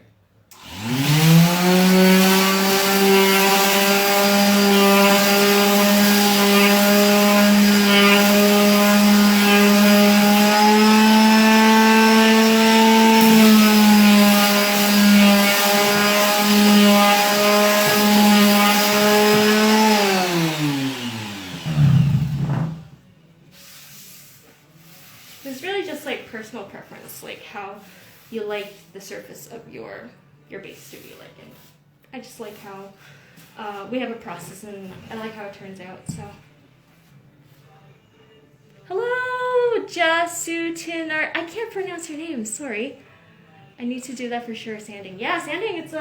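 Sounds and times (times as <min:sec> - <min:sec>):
electric sander running: 0:00.6 - 0:22.9
sander winding down: 0:00.6 - 0:22.9.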